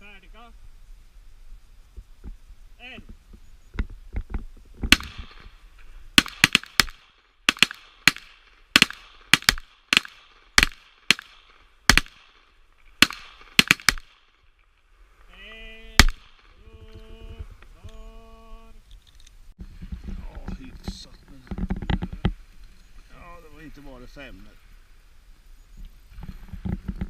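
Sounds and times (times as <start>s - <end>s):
pistol shots: 4.9s - 5.5s, 6.2s - 14.3s, 16.0s - 16.5s.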